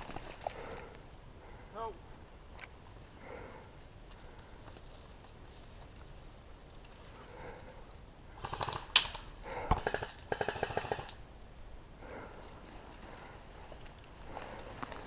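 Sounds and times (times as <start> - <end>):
airsoft guns firing automatic bursts: 8.4 - 11.2.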